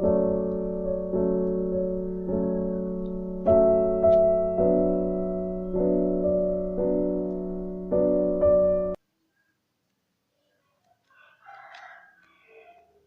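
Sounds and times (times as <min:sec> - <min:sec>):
slow piano chords: 0:00.0 - 0:09.0.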